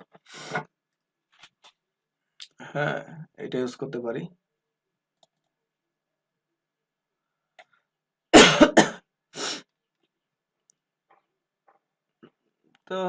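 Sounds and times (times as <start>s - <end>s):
man coughing: 8.4s - 9.0s.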